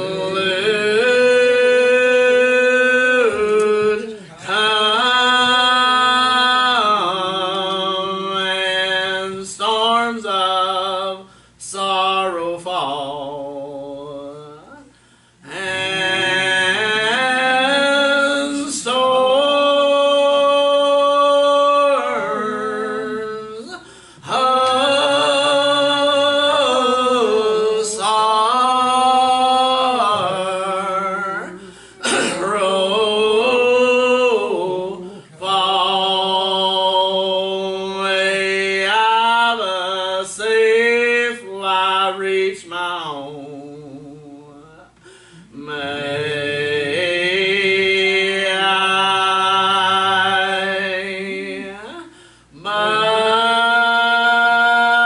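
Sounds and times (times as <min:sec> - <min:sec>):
people singing slow hymn: 0:00.0 - 0:55.0.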